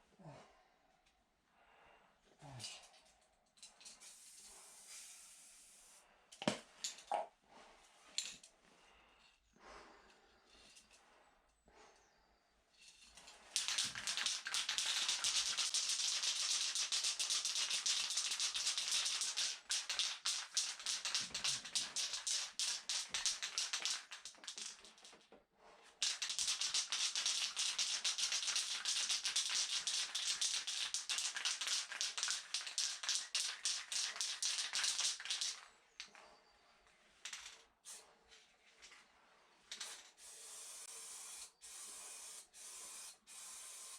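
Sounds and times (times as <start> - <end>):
paint spraying hiss: 4.0 - 6.0.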